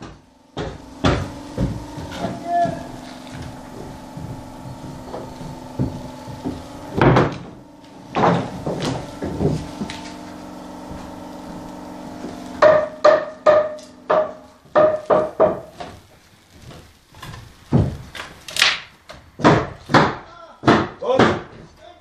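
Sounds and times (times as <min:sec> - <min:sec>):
heavier knocks: 0:00.0 - 0:09.9, 0:16.6 - 0:18.2, 0:19.1 - 0:21.7
steady hum: 0:00.0 - 0:21.0
ringing hammer strikes: 0:12.6 - 0:15.6.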